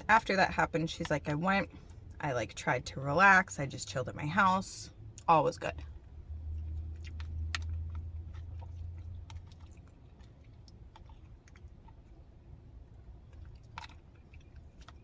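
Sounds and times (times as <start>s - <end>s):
close chewing: 5.1s - 15.0s.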